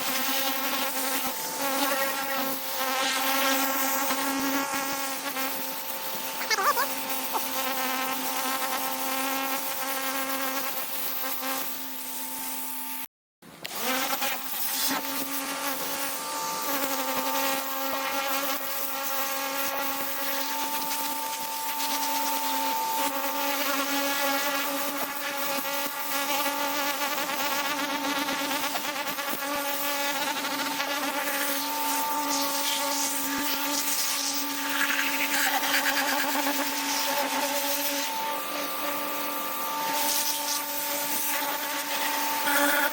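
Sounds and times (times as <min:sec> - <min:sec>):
pressure washer motor buzzing: 0:13.6 - 0:42.9.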